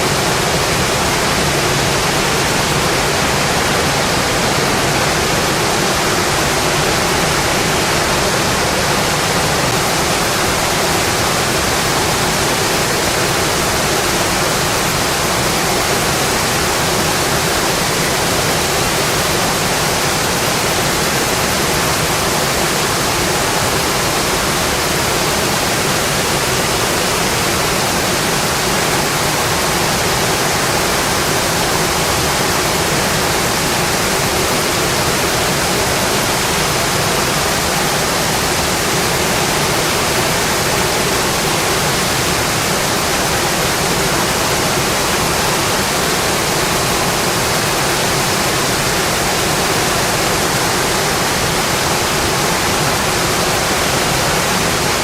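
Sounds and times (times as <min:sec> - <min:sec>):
heavy rainfall: 0:00.0 - 0:55.0.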